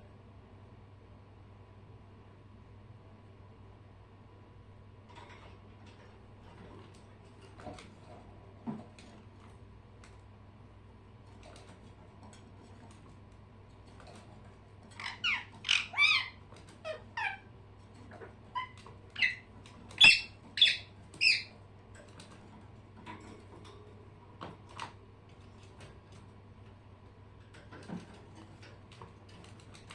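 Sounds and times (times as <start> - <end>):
low steady hum: 0.0 - 29.9
short loud bird calls: 20.0 - 21.5.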